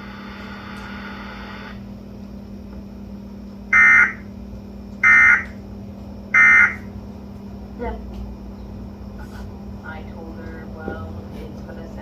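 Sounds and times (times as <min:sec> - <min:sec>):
steady low hum: 0:00.0 - 0:12.0
shrill digital data tones: 0:03.8 - 0:04.2, 0:05.0 - 0:05.5, 0:06.4 - 0:06.9.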